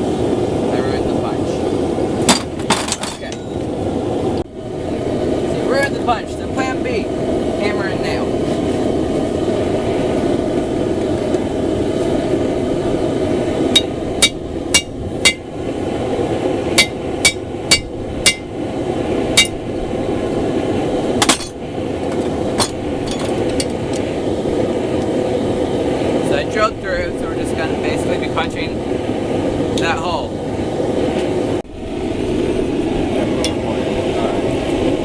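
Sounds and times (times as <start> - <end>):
forge roaring: 0.0 - 35.0
hammer blows ringing on steel: 13.8 - 15.4, 16.8 - 18.5, 19.4 - 19.6.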